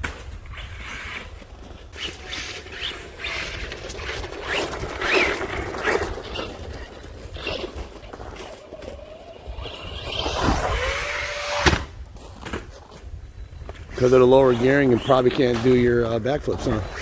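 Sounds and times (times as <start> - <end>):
tyres scrabbling on icy snow: 0.2 - 13.1
electric motor whining: 0.6 - 12.0.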